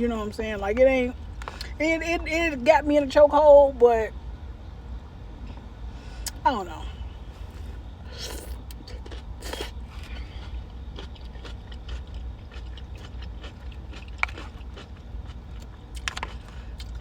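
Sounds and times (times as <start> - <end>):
steady low rumble: 0.0 - 17.0
person chewing crunchy food: 7.4 - 17.0.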